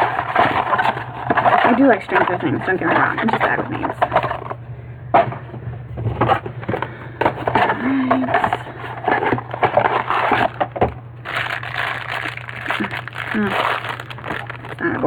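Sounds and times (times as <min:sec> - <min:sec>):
packaging crinkling and tearing: 0:00.0 - 0:04.5, 0:09.0 - 0:15.0
packaging clicks: 0:08.3 - 0:15.0.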